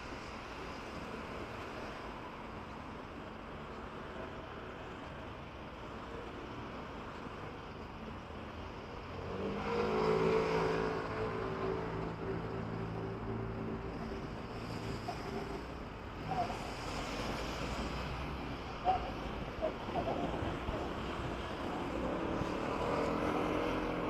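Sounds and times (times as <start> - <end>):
outdoor background noise: 0.0 - 24.0
vehicle engine passing: 9.2 - 15.7, 21.4 - 24.0.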